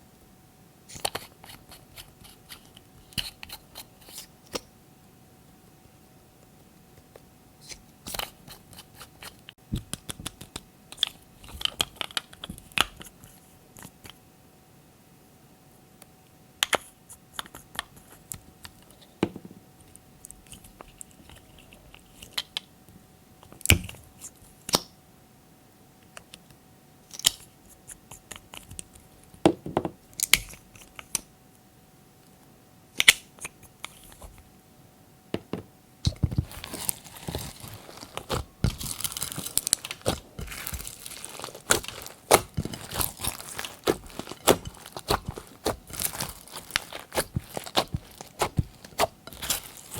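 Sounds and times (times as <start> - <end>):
sticky slime clicks and crackles: 36.1 - 49.9.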